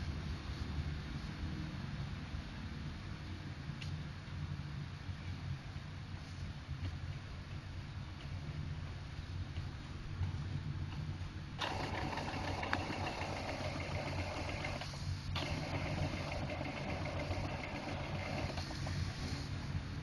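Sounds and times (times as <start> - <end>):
steady low hum: 0.0 - 20.0
inkjet printer mechanism running: 11.6 - 19.5.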